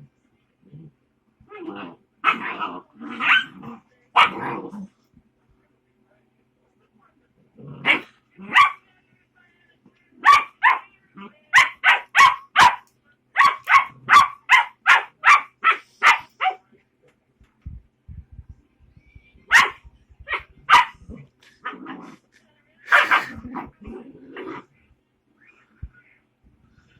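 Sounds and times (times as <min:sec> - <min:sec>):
puppy yapping: 0:02.2 - 0:03.6, 0:10.2 - 0:10.9, 0:11.5 - 0:12.8, 0:13.4 - 0:16.6, 0:19.5 - 0:21.0.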